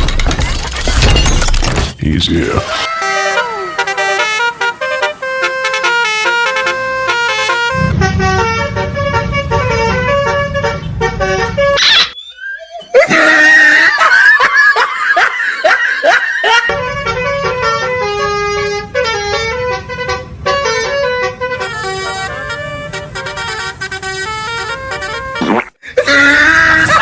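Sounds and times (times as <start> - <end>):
bus multi-tone horn melody: 2.8 - 12.0, 16.5 - 25.6
low engine rumble: 3.2 - 11.8, 16.6 - 25.4.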